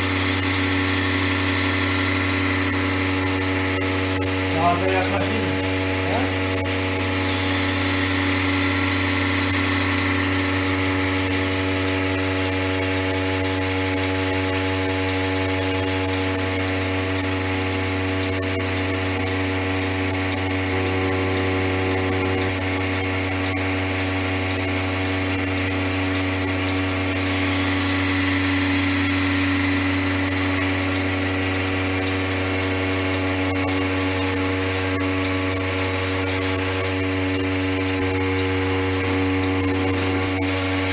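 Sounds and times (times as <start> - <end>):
vacuum pump humming: 0.0 - 40.9.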